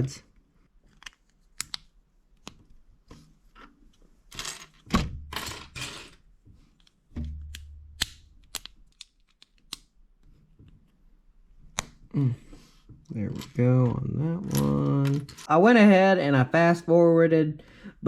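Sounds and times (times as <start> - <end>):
plastic bricks clicking into place: 0.9 - 2.6, 6.8 - 9.9.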